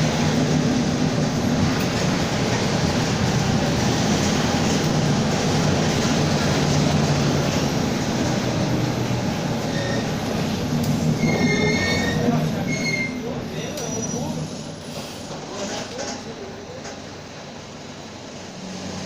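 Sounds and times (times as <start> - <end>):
bus engine running: 0.0 - 11.4
high squeal: 9.6 - 10.2, 11.2 - 14.6.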